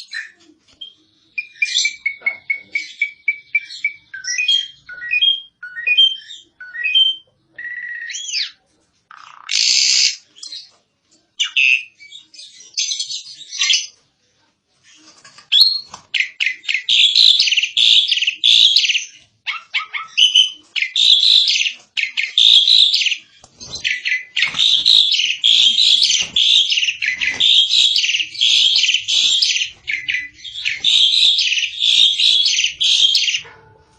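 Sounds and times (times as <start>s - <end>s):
starling singing: 15.5s - 33.6s
starling rapid chattering: 19.5s - 33.5s.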